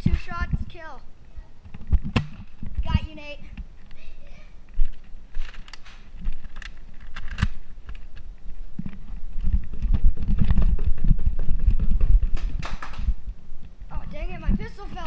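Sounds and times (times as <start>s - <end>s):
low thumping and rumble: 8.4s - 14.7s.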